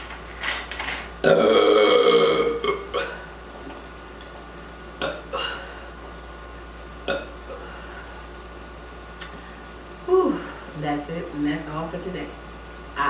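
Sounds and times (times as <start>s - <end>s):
long loud burp: 1.2s - 3.2s, 5.0s - 5.6s, 7.1s - 7.6s.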